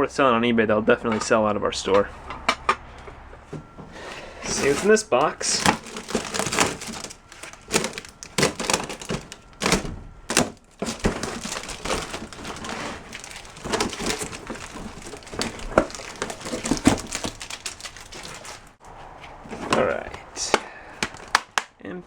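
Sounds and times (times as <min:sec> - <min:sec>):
cardboard box knocks and bumps: 0:03.5 - 0:18.7, 0:19.4 - 0:21.4
paper crinkling and rustling: 0:03.5 - 0:21.6.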